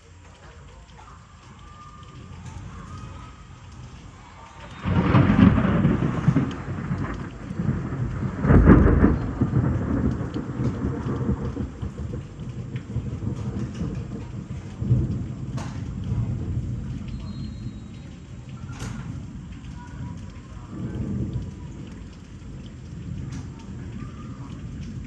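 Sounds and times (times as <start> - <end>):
rain falling: 0.0 - 25.0
thunder rumbling: 0.0 - 25.0.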